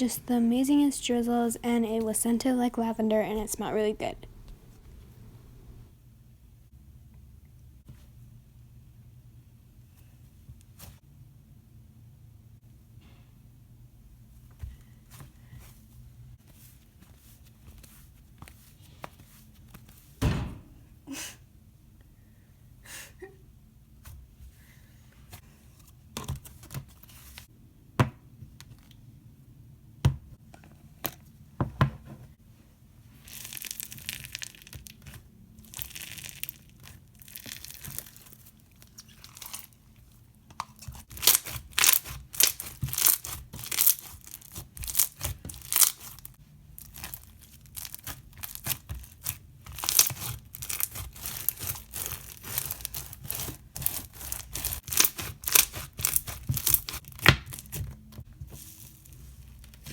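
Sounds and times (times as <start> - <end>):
slime crackling: 33.2 - 39.8, 40.8 - 57.8
sticky slime squelches: 33.2 - 59.9.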